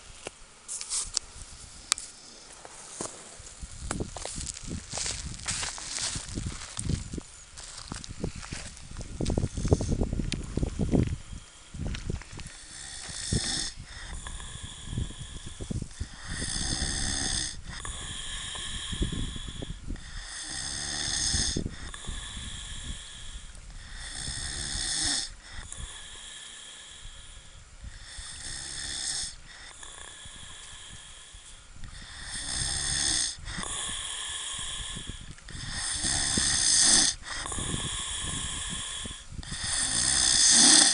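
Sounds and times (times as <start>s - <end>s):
snoring with whistling wheeze: 12.5s - 40.9s.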